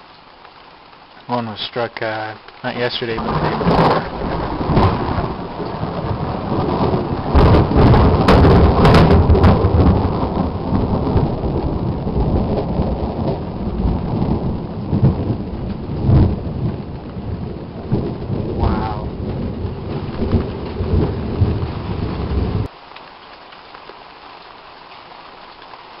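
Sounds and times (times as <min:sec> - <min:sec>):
rain falling: 0:00.0 - 0:26.0
thunder rumbling: 0:03.0 - 0:22.7.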